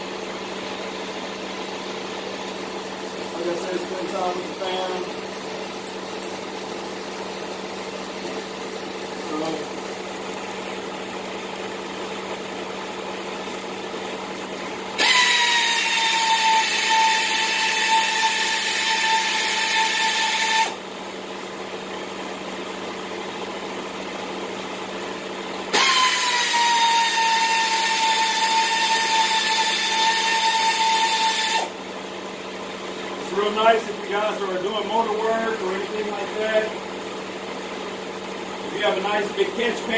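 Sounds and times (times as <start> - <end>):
power tool motor whining: 15.0 - 20.8, 25.7 - 31.8.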